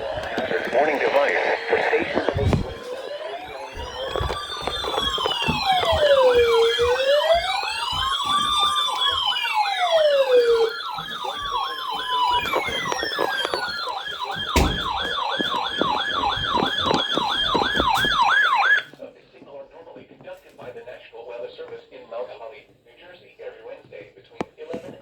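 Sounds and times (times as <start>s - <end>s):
siren wailing: 0.0s - 18.9s
siren yelping: 0.0s - 18.9s.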